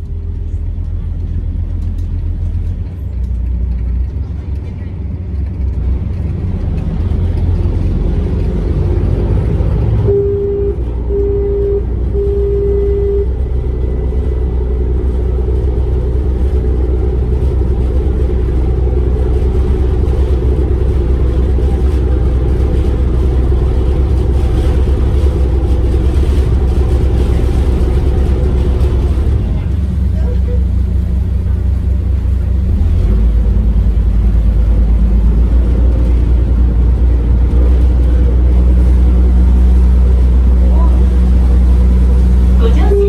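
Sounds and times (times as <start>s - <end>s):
boat engine low rumble: 0.0s - 43.0s
short steady tones: 10.0s - 16.9s.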